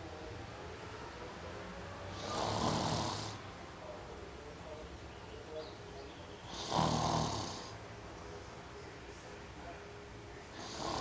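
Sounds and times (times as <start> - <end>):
person snoring: 2.2 - 3.4, 6.5 - 7.8, 10.6 - 11.0
quiet breathing: 10.4 - 11.0.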